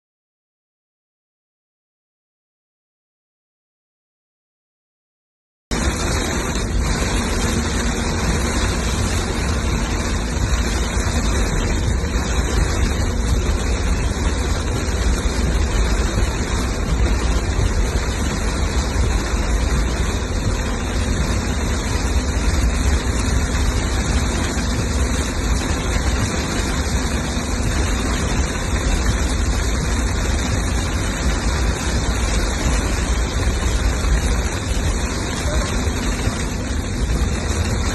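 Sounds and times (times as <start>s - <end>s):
deep continuous rumble: 5.7s - 37.9s
heavy rain hissing: 5.7s - 37.9s.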